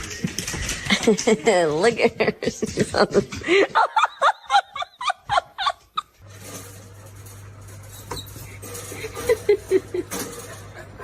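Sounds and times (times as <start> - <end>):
laughter: 0.9 - 6.2, 8.9 - 11.0.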